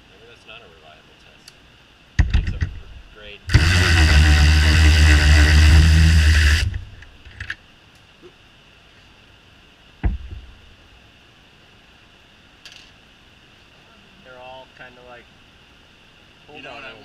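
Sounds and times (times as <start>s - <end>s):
cordless ratchet motor running: 3.5s - 7.1s
sharp thump: 10.0s - 10.5s.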